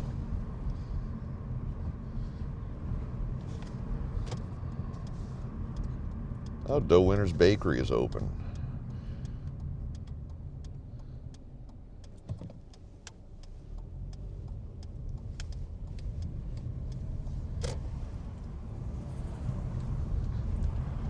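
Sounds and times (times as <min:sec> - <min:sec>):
car engine and road rumble: 0:00.0 - 0:21.0
light clicks: 0:07.9 - 0:18.6.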